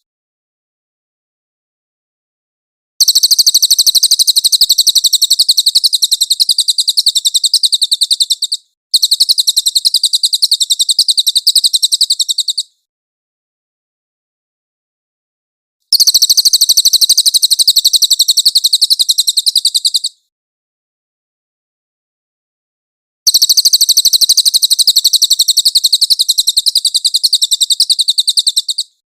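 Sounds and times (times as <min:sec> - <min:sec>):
bird song of rapid sharp notes: 0:03.0 - 0:12.9, 0:15.9 - 0:20.3, 0:23.3 - 0:29.0.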